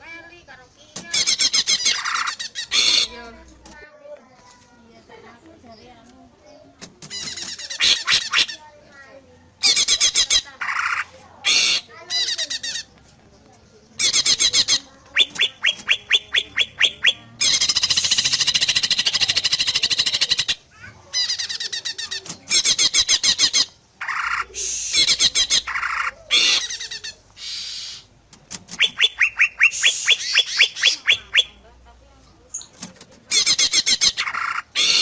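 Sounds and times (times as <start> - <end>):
bird singing: 14.0 - 20.6, 28.7 - 31.6.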